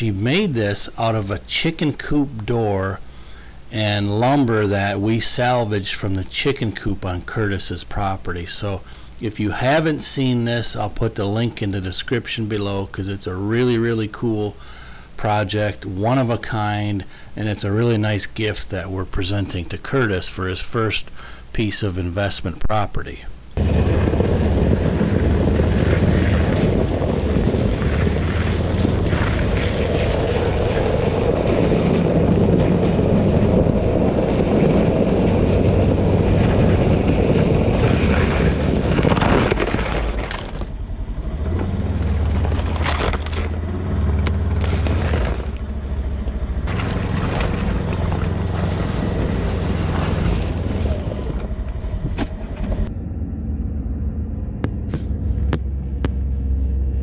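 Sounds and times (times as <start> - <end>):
utv engine running: 23.6 - 39.7, 40.3 - 57.0
wind on microphone: 23.6 - 39.9.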